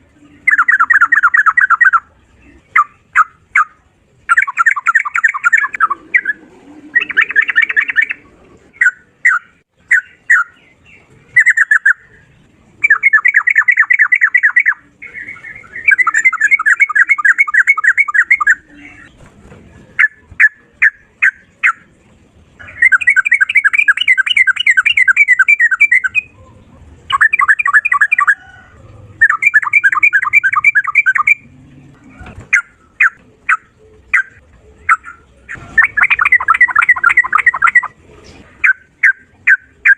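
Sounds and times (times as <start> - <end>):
bulbul singing chattering runs: 32.5 - 38.0.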